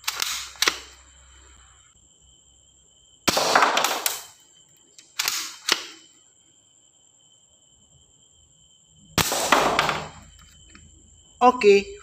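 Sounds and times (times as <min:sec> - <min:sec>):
toy gun rattling burst: 0:00.0 - 0:01.0, 0:03.3 - 0:04.4, 0:05.0 - 0:06.0, 0:09.2 - 0:10.1
toy gun single shots: 0:00.0 - 0:01.0, 0:03.3 - 0:04.4, 0:05.0 - 0:06.1, 0:09.2 - 0:10.3.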